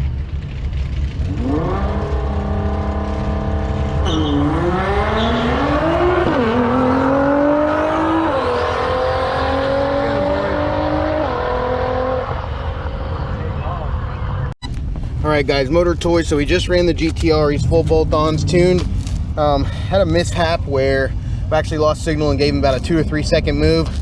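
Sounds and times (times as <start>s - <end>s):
car engine accelerating hard: 0.0s - 14.1s.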